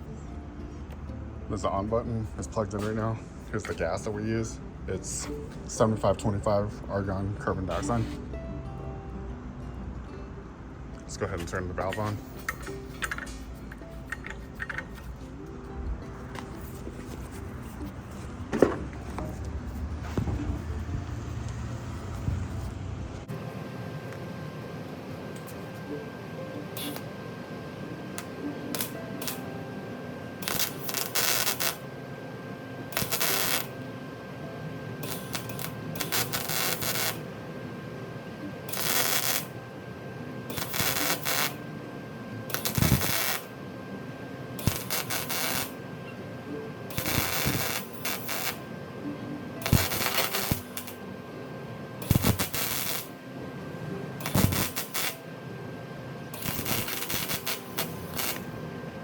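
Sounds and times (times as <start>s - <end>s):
welder arc bursts: 26.8s - 27.1s, 28.2s - 29.5s, 30.4s - 31.8s, 32.9s - 33.8s, 35.0s - 37.3s, 38.7s - 39.6s, 40.5s - 41.6s, 42.5s - 43.5s, 44.6s - 45.8s, 46.9s - 48.6s, 49.6s - 51.0s, 52.0s - 53.1s, 54.2s - 55.2s, 56.3s - 58.6s.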